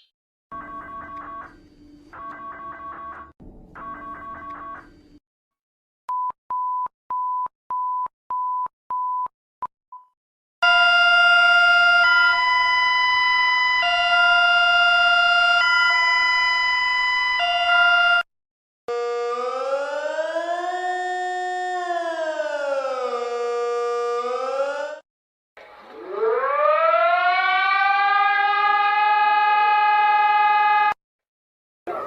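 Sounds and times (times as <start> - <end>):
siren rising: 10.7 - 18.2, 18.9 - 25.0, 25.8 - 31.0.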